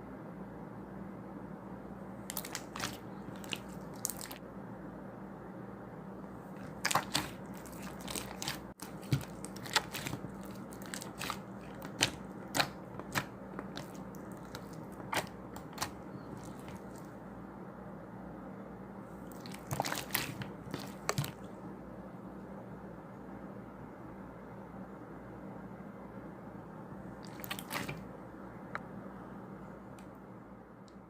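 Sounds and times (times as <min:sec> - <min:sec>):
steady low hum: 0:00.0 - 0:31.0
crunchy food being chewed: 0:02.3 - 0:04.4, 0:06.5 - 0:17.2, 0:19.2 - 0:21.5, 0:27.2 - 0:28.0.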